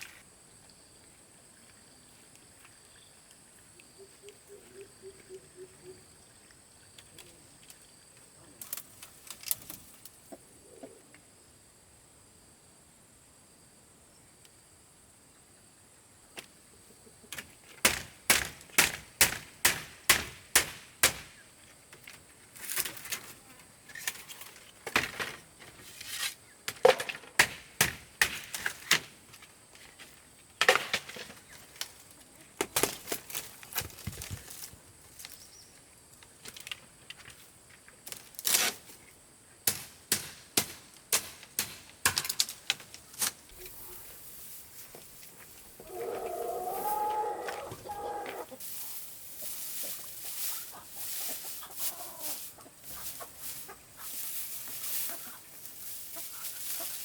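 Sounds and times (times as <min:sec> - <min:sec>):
sharp blows on wood: 0:17.8 - 0:21.4.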